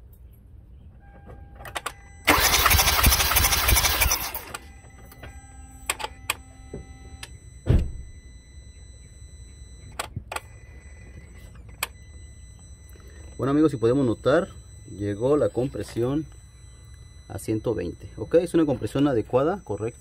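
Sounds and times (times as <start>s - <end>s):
engine cranking without firing: 1.8s - 4.7s
thump: 7.6s - 8.1s.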